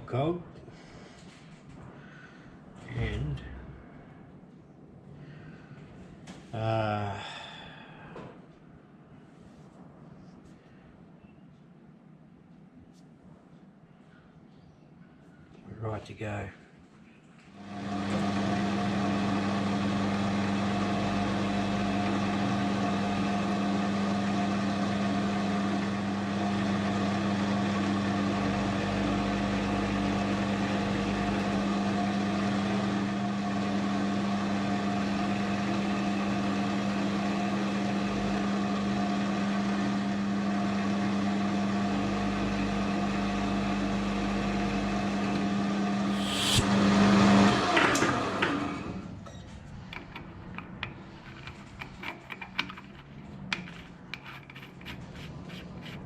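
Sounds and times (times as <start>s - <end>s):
metal lathe motor and gear hum: 17.6s - 46.7s, 49.9s - 56.0s.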